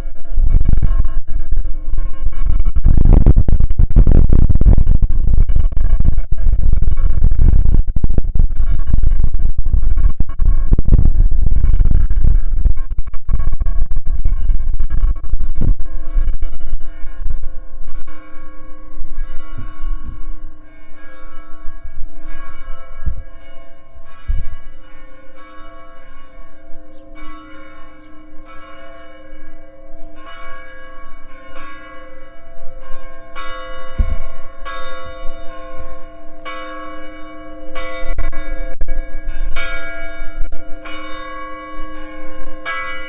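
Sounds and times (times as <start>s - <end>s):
low thumps: 2.0s - 29.0s, 31.5s - 37.1s
church bells pealing: 16.9s - 43.0s.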